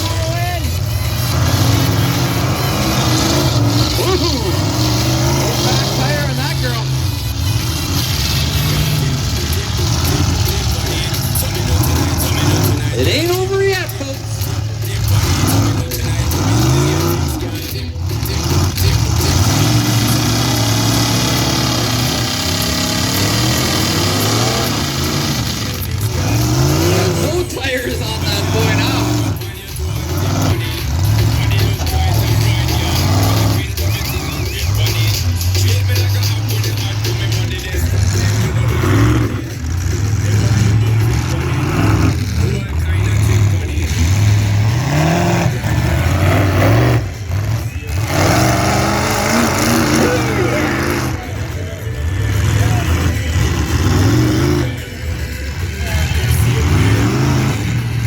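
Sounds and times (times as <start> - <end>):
car engines revving: 0.0 - 58.0.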